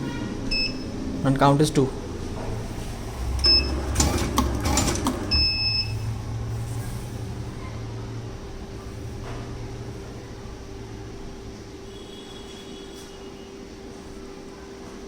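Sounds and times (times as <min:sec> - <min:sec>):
control panel beep: 0:00.5 - 0:00.9, 0:03.4 - 0:06.0
feed motor humming: 0:02.3 - 0:06.5.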